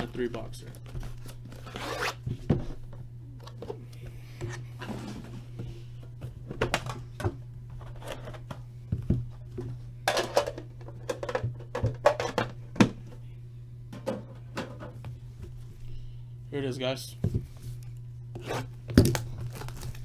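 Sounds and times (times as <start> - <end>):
steady low hum: 0.0 - 20.0
packaging clicks and crinkles: 19.0 - 20.0.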